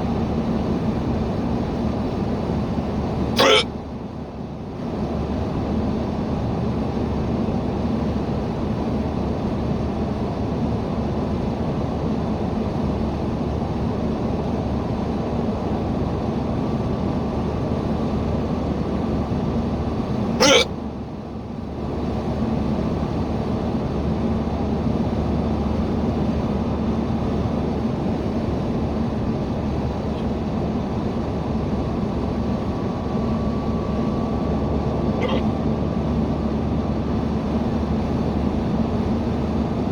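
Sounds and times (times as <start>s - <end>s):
person hiccuping: 3.4s - 3.7s, 20.4s - 20.7s, 35.2s - 35.6s.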